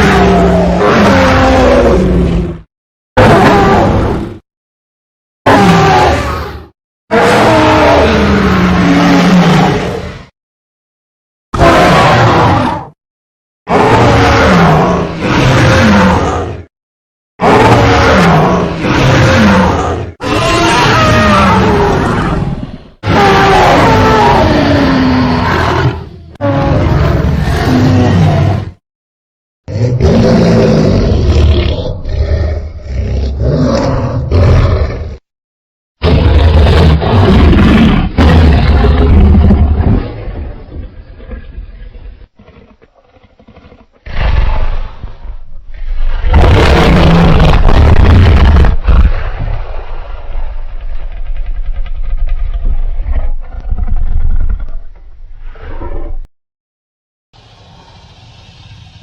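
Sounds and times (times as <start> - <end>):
loud low dinosaur roar: 0.0 - 4.4, 5.5 - 10.3, 11.6 - 13.0, 13.7 - 16.7, 17.4 - 28.8, 29.7 - 35.2, 36.0 - 49.6
low rumbling with clicks: 47.4 - 56.3.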